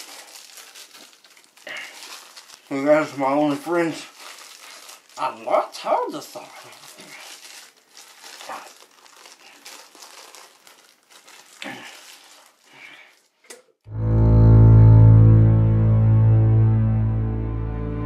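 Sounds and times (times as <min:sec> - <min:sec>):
wrapper rustling and crinkling: 0:00.0 - 0:13.5
low sustained music drone: 0:13.9 - 0:18.0.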